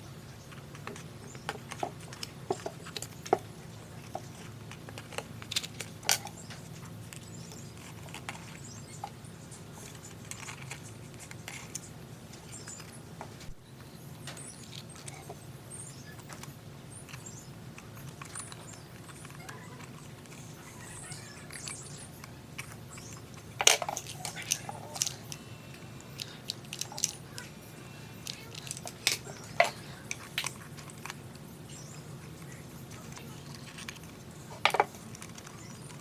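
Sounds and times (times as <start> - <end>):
low steady hum: 0.0 - 36.0.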